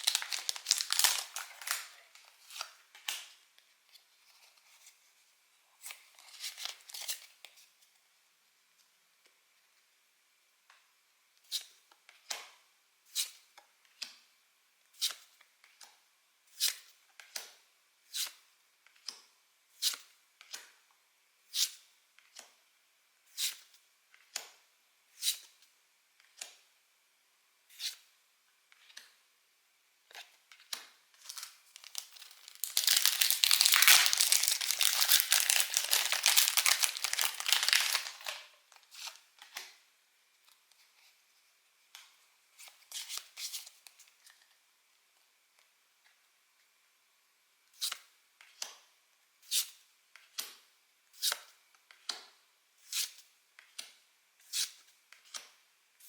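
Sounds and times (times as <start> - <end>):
wrapper tearing and crinkling: 0.0 - 2.7, 31.2 - 38.6.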